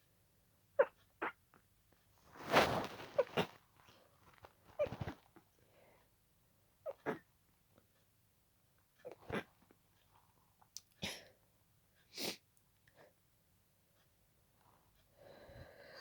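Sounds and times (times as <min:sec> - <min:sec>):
quick breaths: 0:15.2 - 0:16.0.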